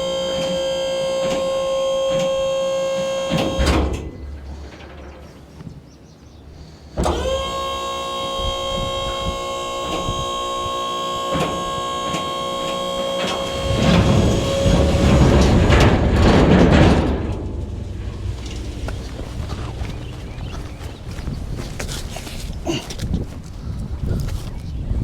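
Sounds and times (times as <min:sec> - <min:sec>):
machine high-pitched whine: 0:00.0 - 0:04.7, 0:07.0 - 0:21.3
rough crunching noise: 0:07.3 - 0:25.0.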